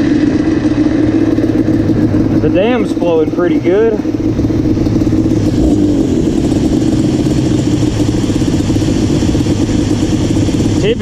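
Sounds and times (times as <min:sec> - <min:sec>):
two-stroke engine idling: 0:00.0 - 0:11.0.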